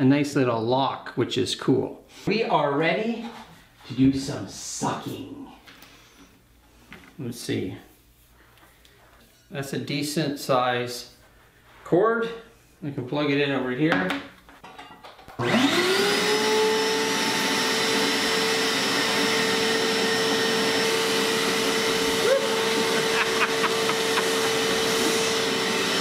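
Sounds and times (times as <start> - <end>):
shop vacuum motor whine: 15.4 - 26.0.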